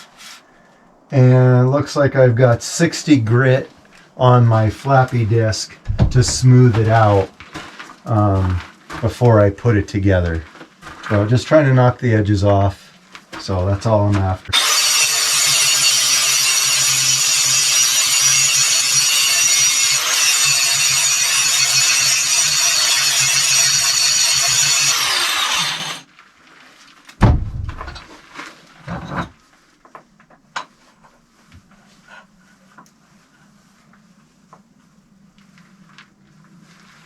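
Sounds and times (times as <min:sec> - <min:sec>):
dull thumps: 0:05.8 - 0:07.0, 0:27.2 - 0:28.1
angle grinder grinding steel: 0:05.9 - 0:07.0, 0:14.5 - 0:26.1.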